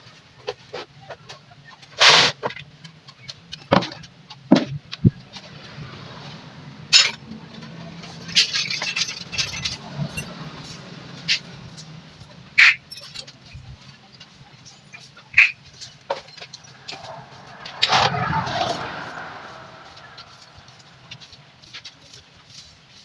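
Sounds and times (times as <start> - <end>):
metallic clinks of tools: 6.9 - 7.3, 8.0 - 18.8.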